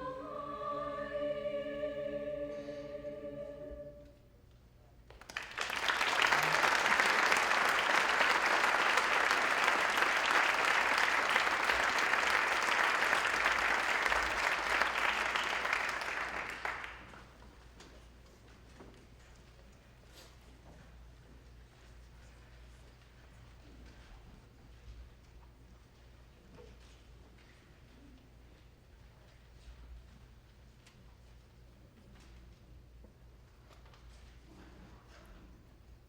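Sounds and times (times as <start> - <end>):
choir holding chord: 0.0 - 4.2
audience applauding: 5.1 - 17.3.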